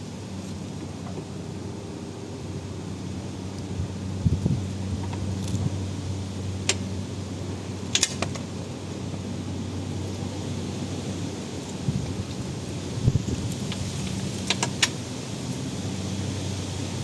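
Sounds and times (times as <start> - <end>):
low electrical hum: 0.0 - 17.0
metallic clinks of tools: 7.9 - 8.5.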